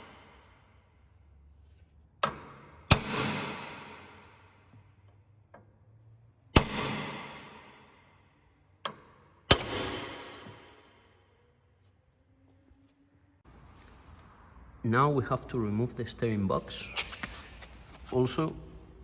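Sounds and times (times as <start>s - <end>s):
hammer striking steel: 2.2s - 4.4s, 6.5s - 8.1s, 8.9s - 11.0s.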